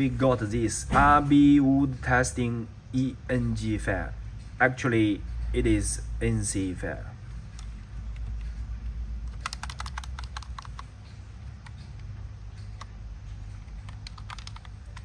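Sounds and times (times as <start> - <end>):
steady low hum: 0.0 - 15.0
keyboard key clicks: 9.3 - 10.9, 13.6 - 15.0.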